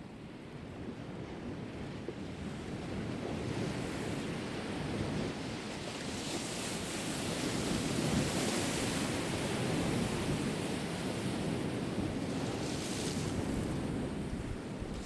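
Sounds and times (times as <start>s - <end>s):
wind buffeting microphone: 6.8s - 15.0s.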